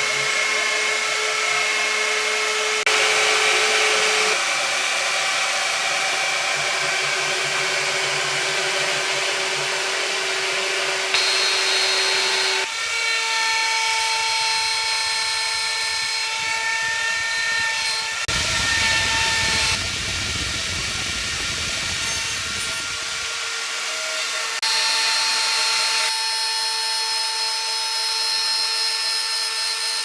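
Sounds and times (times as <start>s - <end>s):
cnc spindle whine: 0.0s - 26.2s
machine cutting noise: 5.8s - 24.6s.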